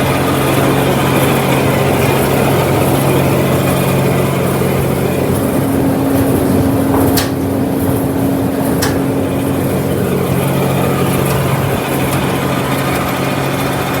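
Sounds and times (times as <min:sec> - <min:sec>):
tractor engine humming: 0:00.0 - 0:14.0
sharp clicks: 0:08.8 - 0:09.3.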